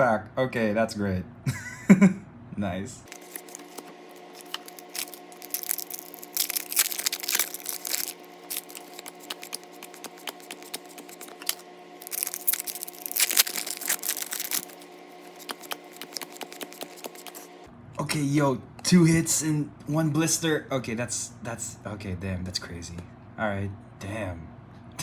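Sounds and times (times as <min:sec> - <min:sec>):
faint steady hum: 0:00.0 - 0:25.0
foil wrapper crinkling and tearing: 0:03.1 - 0:17.5
trading cards clicking: 0:03.1 - 0:17.5.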